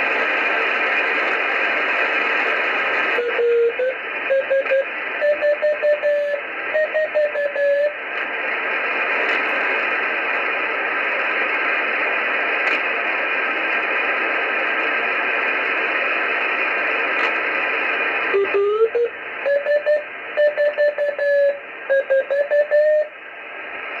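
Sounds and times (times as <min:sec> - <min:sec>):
radio receiver hiss: 0:00.0 - 0:24.0
morse code keyed tone: 0:03.2 - 0:07.9, 0:18.4 - 0:23.1.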